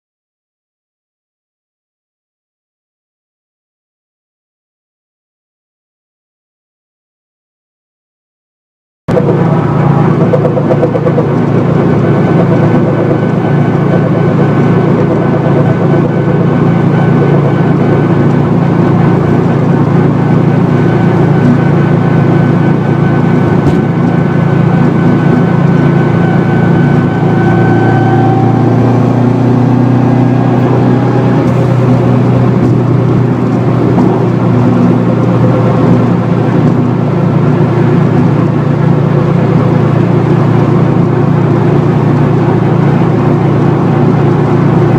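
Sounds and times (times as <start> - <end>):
differential whine: 9.1 - 44.9
wheel bearing drone: 9.1 - 44.9.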